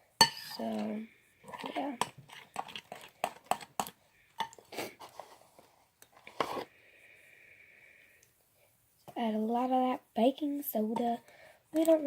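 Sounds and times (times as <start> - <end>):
slime squelching in a bowl: 0.2 - 5.0.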